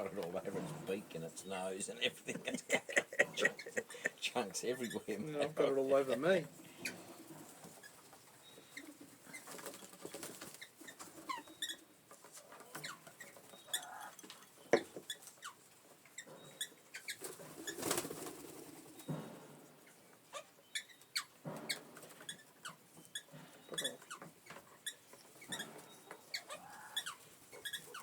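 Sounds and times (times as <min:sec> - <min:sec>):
parrots chirping: 0:01.5 - 0:09.6, 0:12.7 - 0:15.6, 0:20.3 - 0:28.0.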